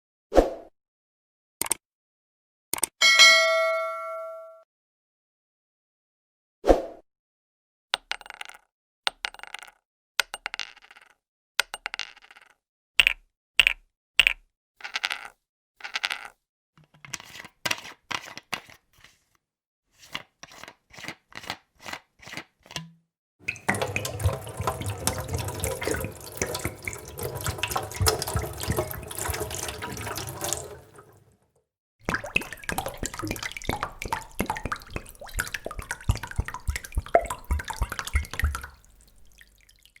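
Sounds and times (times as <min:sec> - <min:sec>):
liquid gurgling in a bottle: 0:23.4 - 0:31.3, 0:32.0 - 0:39.9.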